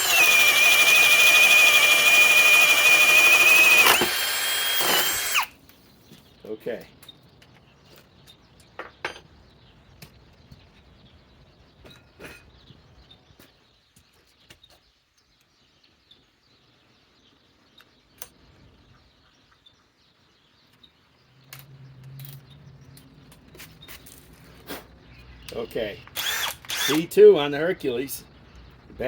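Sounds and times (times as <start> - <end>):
faint bird chirps: 5.6 - 21.6.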